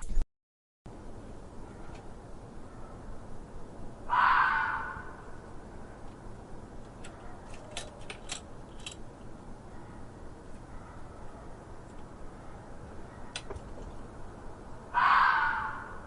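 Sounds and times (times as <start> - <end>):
fox calling: 4.0 - 5.4, 14.9 - 16.0.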